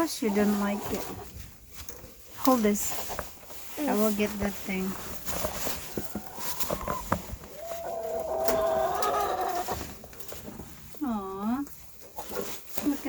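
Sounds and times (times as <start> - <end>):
chicken calling: 5.8 - 10.1.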